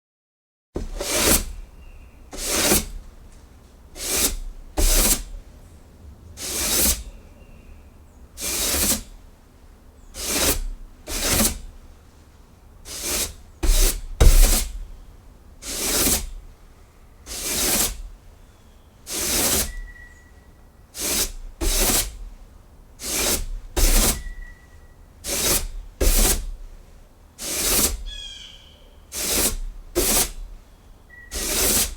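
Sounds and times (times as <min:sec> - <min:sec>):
broom knocking on wood: 0:00.8 - 0:01.7, 0:02.3 - 0:03.4, 0:04.0 - 0:05.4, 0:13.0 - 0:14.8, 0:23.1 - 0:24.3, 0:25.3 - 0:26.6
broom bristles swishing on wood: 0:02.3 - 0:05.4, 0:06.4 - 0:07.1, 0:08.4 - 0:09.2, 0:10.2 - 0:11.8, 0:12.9 - 0:14.8, 0:15.6 - 0:16.4, 0:17.3 - 0:18.1, 0:19.1 - 0:19.8, 0:21.0 - 0:22.2, 0:23.0 - 0:24.4, 0:25.2 - 0:26.6, 0:27.4 - 0:28.0, 0:29.1 - 0:30.6, 0:31.3 - 0:31.9.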